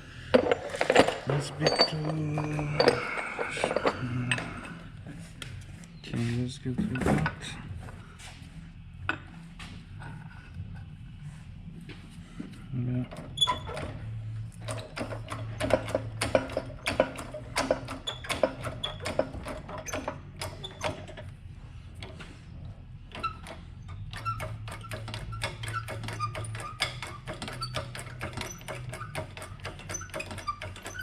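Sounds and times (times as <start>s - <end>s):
steady low hum: 0.0s - 17.8s, 19.4s - 25.7s.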